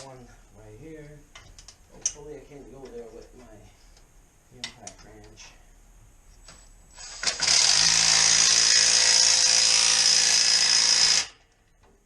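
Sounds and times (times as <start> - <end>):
impact wrench hammering: 7.2 - 11.4.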